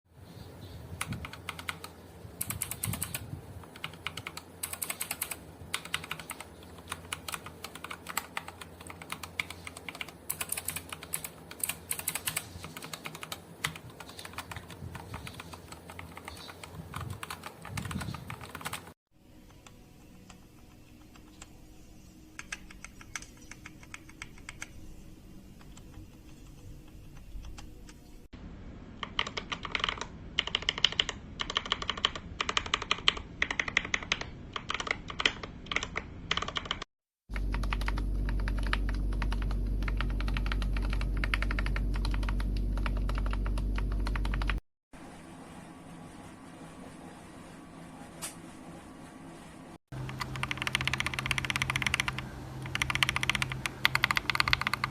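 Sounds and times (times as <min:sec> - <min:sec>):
keyboard typing clacks: 0:01.0 - 0:19.0, 0:29.0 - 0:44.6, 0:50.0 - 0:54.9.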